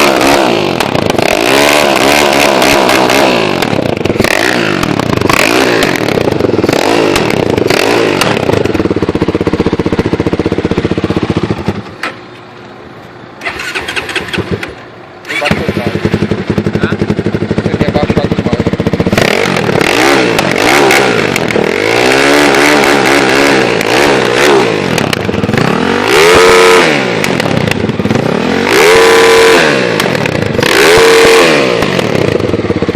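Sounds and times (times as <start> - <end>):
motorcycle engine revving: 0.0 - 12.4, 13.4 - 32.9
motorcycle engine idling: 0.7 - 1.4, 3.4 - 21.8, 24.7 - 26.0, 26.9 - 28.7, 29.9 - 30.7, 31.8 - 32.9.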